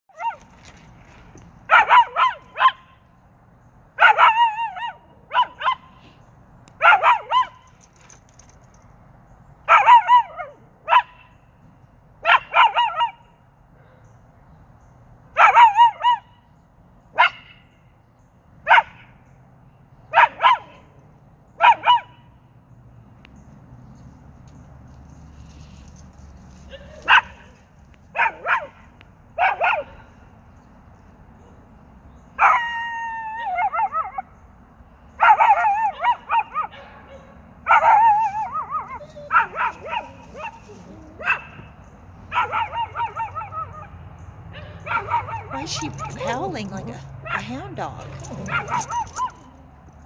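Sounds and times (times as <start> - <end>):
dog howling: 48.0 - 49.4.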